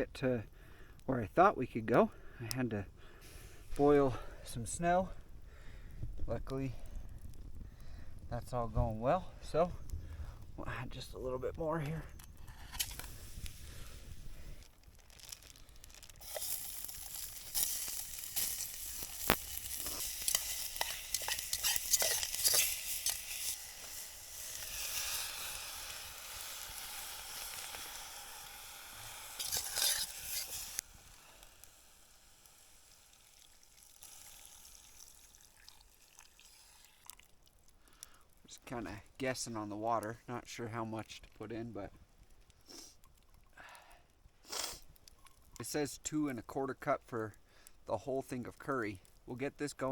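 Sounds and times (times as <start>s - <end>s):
food sizzling in a pot: 16.0s - 37.2s
stirring scrapes and clicks: 16.3s - 25.1s, 29.4s - 30.8s.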